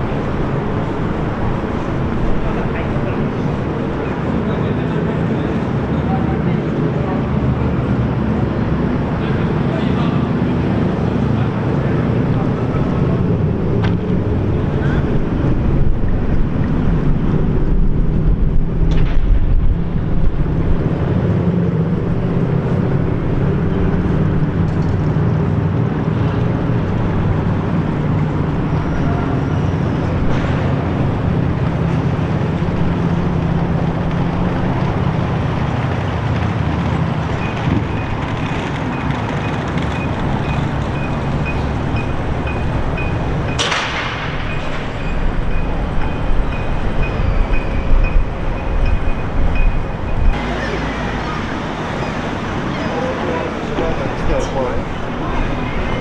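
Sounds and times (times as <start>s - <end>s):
engine rumbling: 0.0s - 56.0s
faint pulsing high beep: 44.4s - 50.4s.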